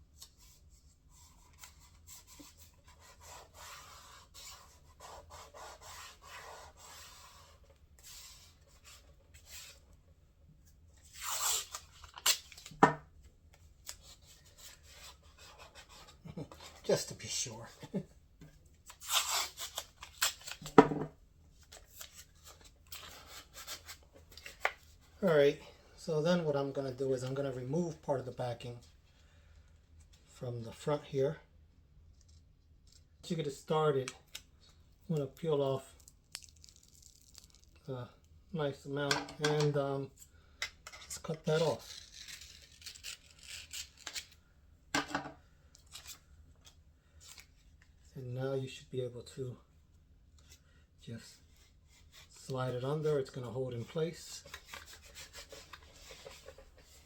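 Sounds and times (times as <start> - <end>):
tape pulled and torn: 11.1 - 12.8, 18.9 - 20.8, 36.0 - 37.8, 41.5 - 44.4
paper crinkling: 36.3 - 37.8.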